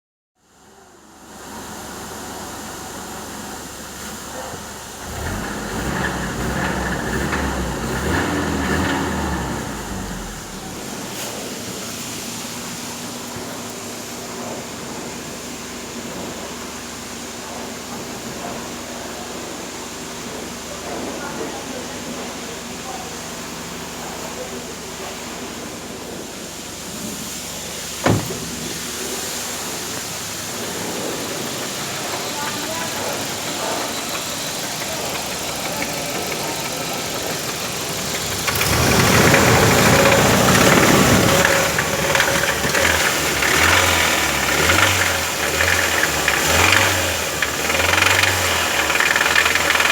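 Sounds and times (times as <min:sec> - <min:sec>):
car engine running: 0:03.2 - 0:12.5, 0:27.9 - 0:49.9
sharp thump: 0:28.0 - 0:28.9.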